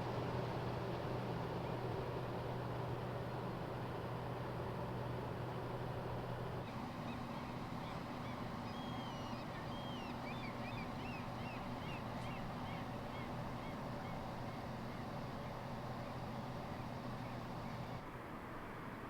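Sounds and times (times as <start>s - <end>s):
low mechanical hum: 0.0s - 19.0s
birds chirping: 6.8s - 18.0s.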